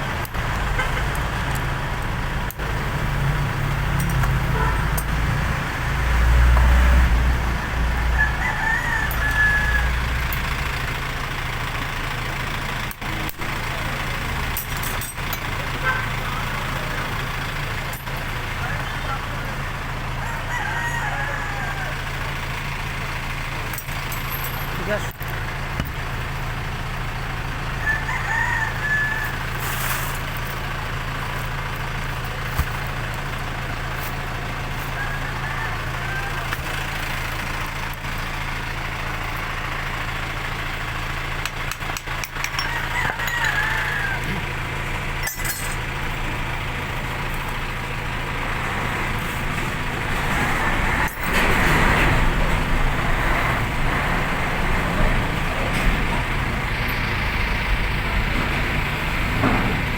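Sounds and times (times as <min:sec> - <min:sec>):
engine-like hum: 0:00.0 - 0:59.9
rooster crowing: 0:07.6 - 0:10.3, 0:20.1 - 0:22.3, 0:27.7 - 0:29.8, 0:34.6 - 0:37.2, 0:42.5 - 0:44.7.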